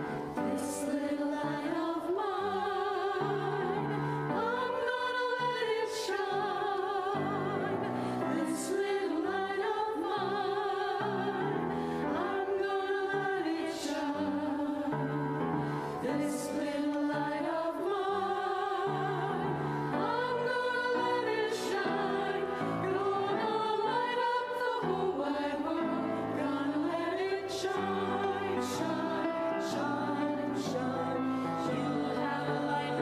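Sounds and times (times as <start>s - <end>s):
church choir singing: 0.0s - 33.0s.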